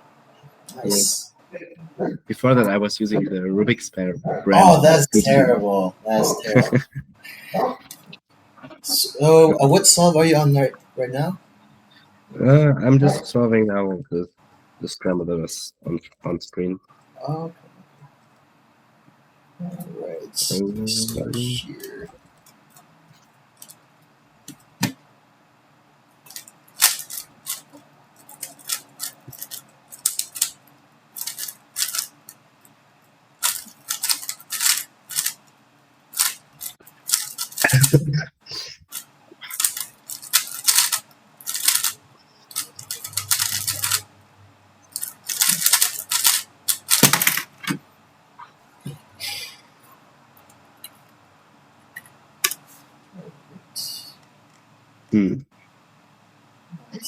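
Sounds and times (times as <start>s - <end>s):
plastic cube clicking: 31.2s - 32.1s, 33.4s - 35.4s, 38.9s - 41.9s, 45.0s - 47.4s.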